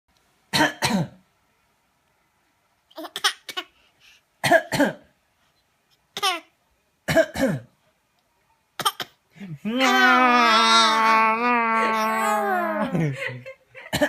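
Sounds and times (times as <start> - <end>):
baby making cough-like sounds: 3.0 - 3.7, 4.4 - 5.0, 7.1 - 7.7, 8.8 - 9.2.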